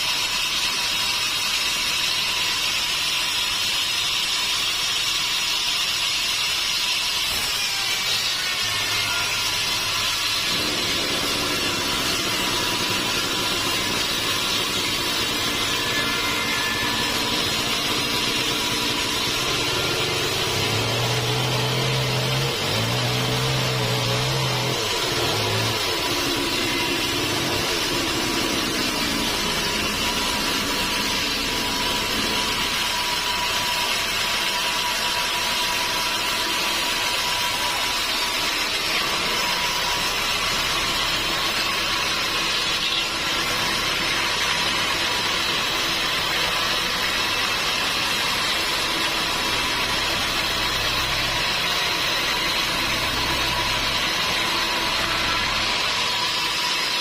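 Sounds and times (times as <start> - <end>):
sawmill machinery running: 0.0 - 57.0
thin constant whine: 8.7 - 34.6.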